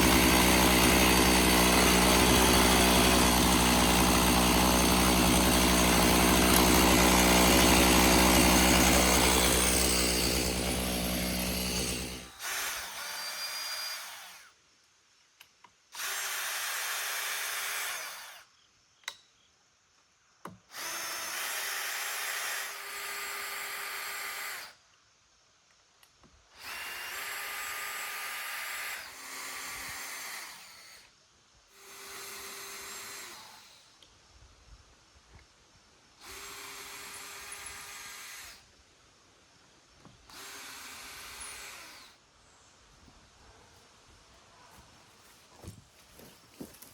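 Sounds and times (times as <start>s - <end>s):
chainsaw engine running: 0.0s - 12.6s
electric power tool whirring: 0.0s - 14.5s, 40.3s - 42.2s.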